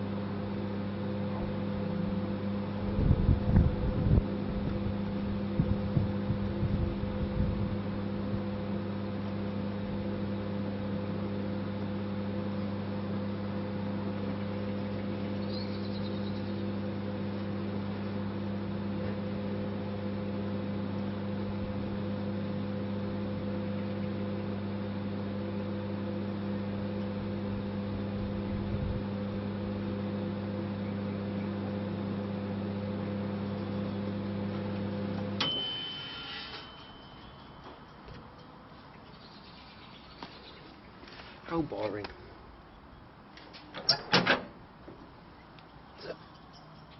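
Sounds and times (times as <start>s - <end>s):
microwave oven humming: 0.0s - 38.4s
microwave beep: 35.0s - 37.8s.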